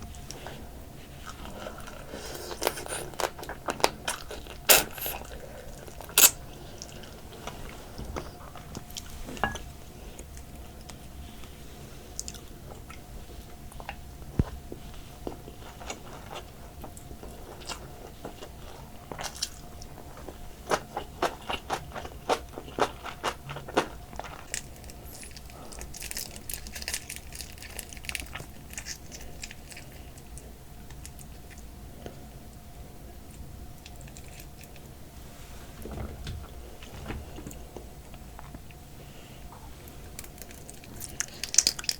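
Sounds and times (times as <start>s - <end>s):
crunching through crab shell: 2.1s - 6.5s, 20.7s - 31.3s, 40.1s - 41.9s
chewing: 15.2s - 32.2s, 39.8s - 41.9s.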